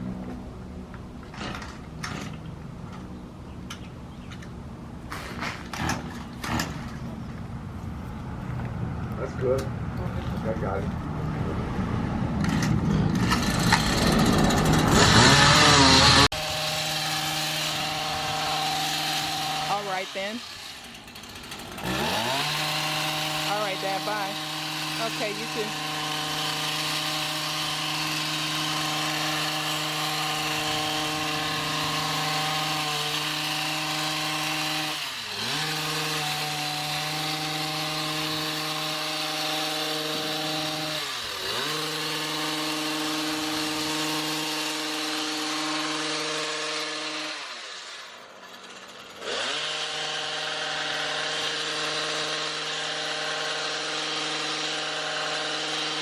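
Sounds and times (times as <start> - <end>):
small gas engine running: 12.4 - 56.0.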